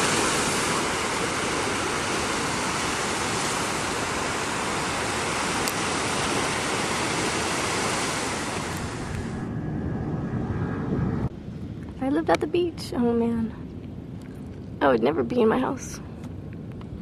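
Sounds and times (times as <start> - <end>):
ocean surf breaking on beach: 0.0 - 9.4.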